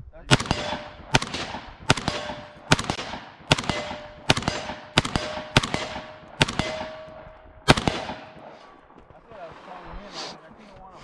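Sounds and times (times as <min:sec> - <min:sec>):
rifle shots: 0:00.3 - 0:09.0.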